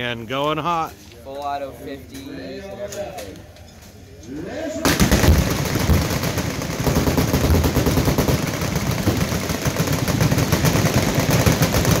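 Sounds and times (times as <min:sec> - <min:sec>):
machine guns firing: 0:04.8 - 0:12.0.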